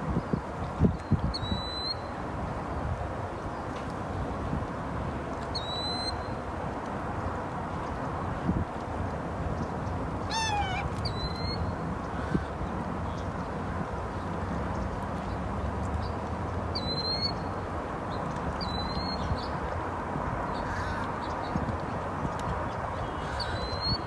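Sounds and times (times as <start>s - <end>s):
bird calls: 10.3s - 12.3s.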